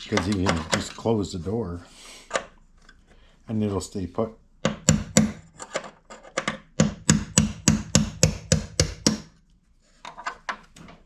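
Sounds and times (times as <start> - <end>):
hammer striking metal pin: 4.6 - 5.5, 6.4 - 9.4.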